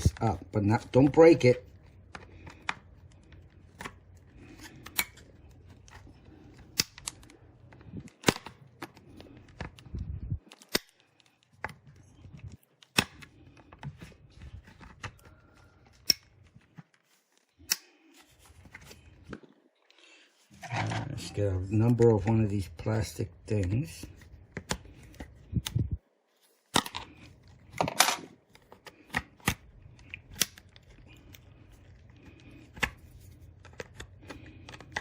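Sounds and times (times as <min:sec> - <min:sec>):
plastic clips snapping: 0:06.6 - 0:07.3.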